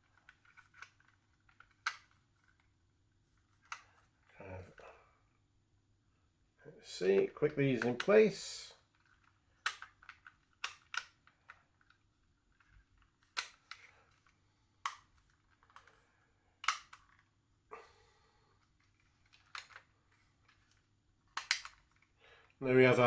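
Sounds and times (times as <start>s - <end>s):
plastic toy parts clicking: 0.0s - 2.7s, 3.4s - 4.8s, 7.1s - 16.0s, 16.6s - 17.3s, 18.6s - 22.6s.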